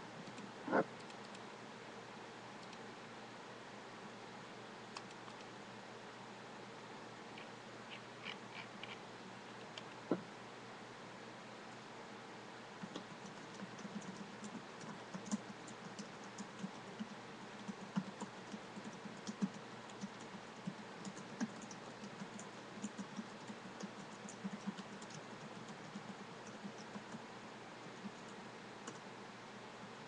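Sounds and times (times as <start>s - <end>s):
typing on computer keyboard: 12.8s - 27.2s.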